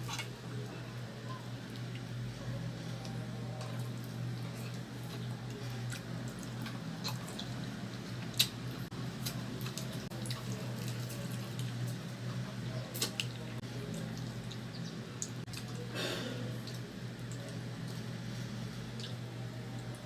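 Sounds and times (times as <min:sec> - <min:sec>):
chewing and mouth smacks: 0:03.6 - 0:08.6.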